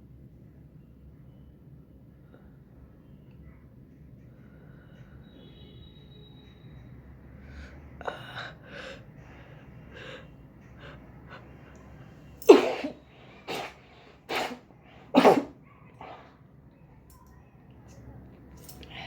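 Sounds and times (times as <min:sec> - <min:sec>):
person sneezing: 0:12.4 - 0:15.6.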